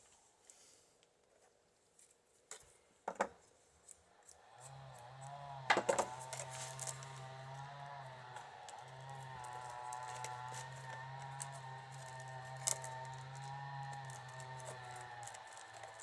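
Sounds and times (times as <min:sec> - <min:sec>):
motor hum with whine: 0:04.6 - 0:16.0.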